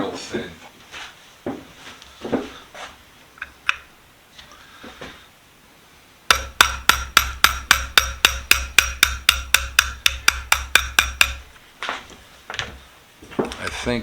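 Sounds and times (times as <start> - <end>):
hammer tapping metal pin punch: 6.3 - 11.5.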